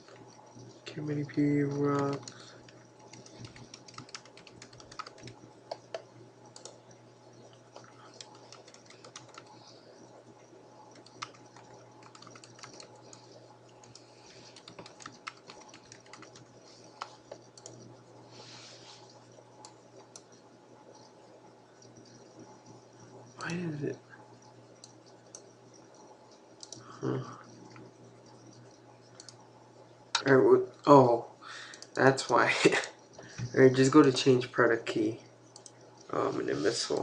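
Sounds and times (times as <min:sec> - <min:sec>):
keyboard typing: 0:00.0 - 0:10.2, 0:10.9 - 0:18.0, 0:24.8 - 0:29.4
low steady hum: 0:00.0 - 0:37.0.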